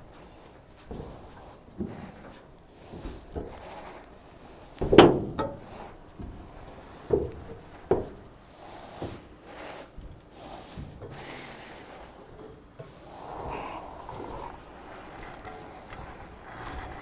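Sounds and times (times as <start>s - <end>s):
knocks of objects being handled: 4.8s - 6.4s.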